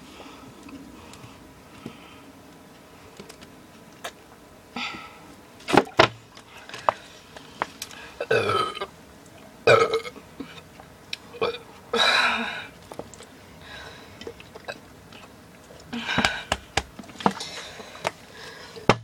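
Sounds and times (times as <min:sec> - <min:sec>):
girl burping: 0:08.2 - 0:08.9, 0:09.7 - 0:10.2.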